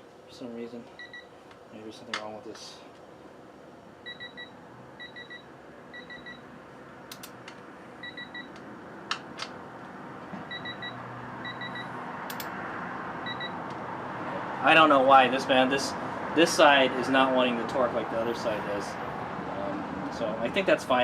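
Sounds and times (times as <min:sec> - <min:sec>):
electronic beeping: 0:04.0 - 0:06.4, 0:08.0 - 0:08.6, 0:10.5 - 0:11.9, 0:13.2 - 0:13.6.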